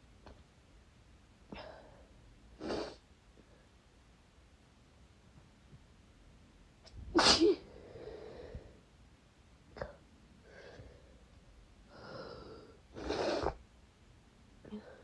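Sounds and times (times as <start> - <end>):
person sneezing: 7.2 - 7.7.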